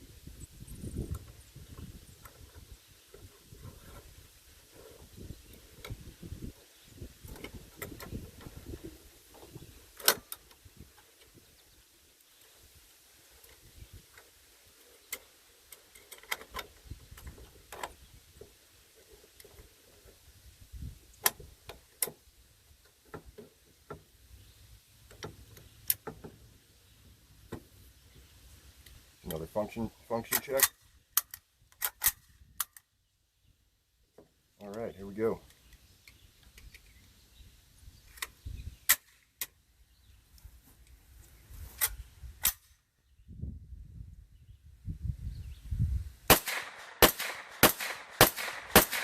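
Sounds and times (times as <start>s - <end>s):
gun handling metal clicks: 15.1s - 18.0s, 30.2s - 32.9s, 46.4s - 49.0s.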